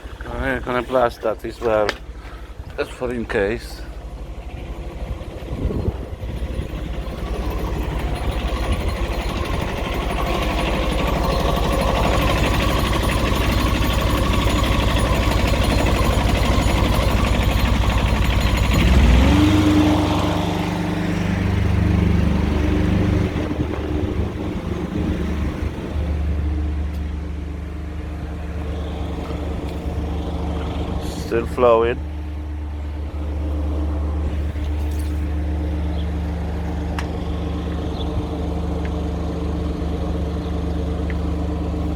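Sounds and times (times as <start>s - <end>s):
pump pulsing: 4.0s - 41.9s.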